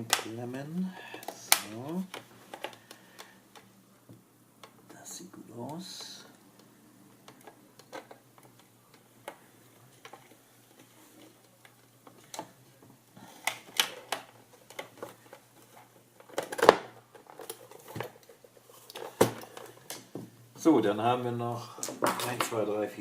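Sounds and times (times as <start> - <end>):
plastic parts clicking and knocking: 1.1 - 5.0, 6.0 - 20.3.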